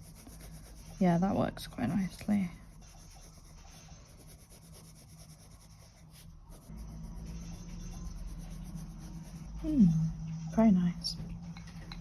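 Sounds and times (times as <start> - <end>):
pencil scribbling on paper: 0.0 - 9.5
low steady hum: 0.0 - 12.0.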